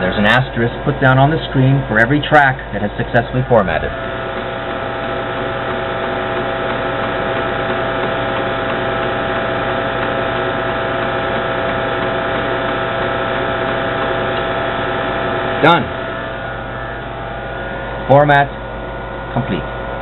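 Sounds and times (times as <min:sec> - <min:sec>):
floppy drive formatting disk: 0:00.0 - 0:20.0
steady computer tones: 0:00.0 - 0:20.0
steady electrical hum: 0:00.0 - 0:20.0.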